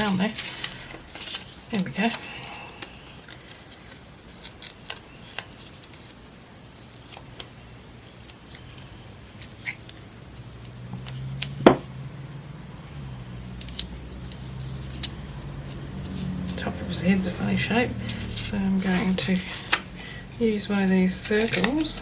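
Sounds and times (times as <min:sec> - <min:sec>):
low steady hum: 0:00.0 - 0:22.0
scissors snipping paper: 0:00.1 - 0:10.0, 0:13.5 - 0:15.2, 0:18.1 - 0:19.9, 0:21.2 - 0:22.0.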